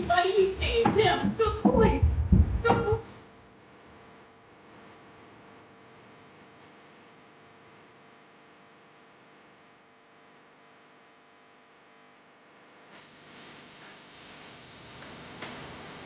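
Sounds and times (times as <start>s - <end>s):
low background noise: 0.0s - 4.0s
faint electrical hum: 0.0s - 16.0s
loud hiss-like noise: 12.9s - 16.0s.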